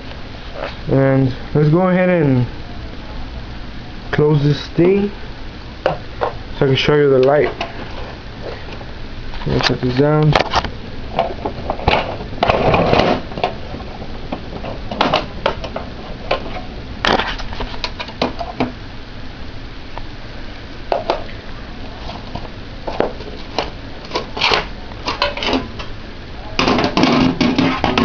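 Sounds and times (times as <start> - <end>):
computer case cover clanking: 11.2 - 13.6, 26.6 - 28.0.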